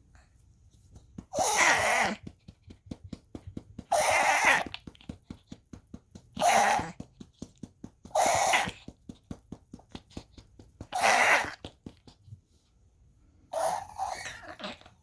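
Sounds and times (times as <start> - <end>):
pet coughing: 10.0 - 11.8.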